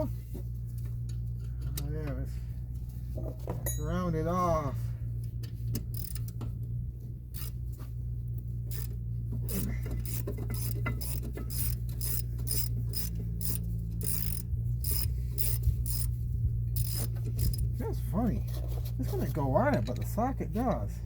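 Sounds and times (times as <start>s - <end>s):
steady low hum: 0.0s - 21.0s
metallic scraping and clicking: 5.2s - 20.8s.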